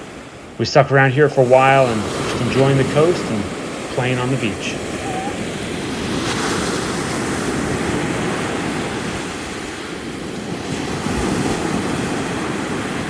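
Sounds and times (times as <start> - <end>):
ocean surf on sand beach: 0.0 - 13.0
wind buffeting microphone: 1.2 - 13.0.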